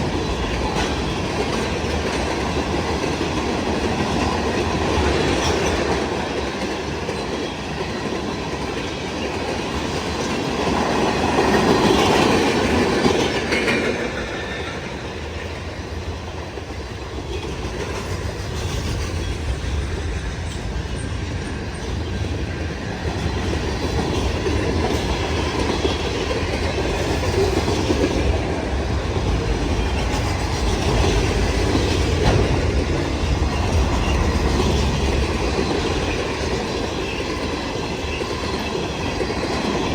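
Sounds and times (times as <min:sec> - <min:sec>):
freight train rumbling past: 0:00.0 - 0:39.9
wheels clicking over rail joints: 0:23.1 - 0:39.9.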